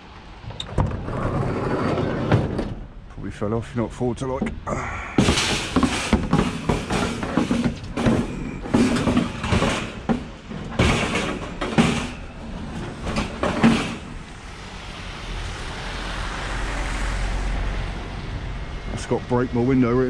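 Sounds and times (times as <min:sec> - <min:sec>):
scrap metal scrapes and knocks: 0:00.5 - 0:02.9, 0:05.2 - 0:14.4
steady rushing noise: 0:05.2 - 0:20.0.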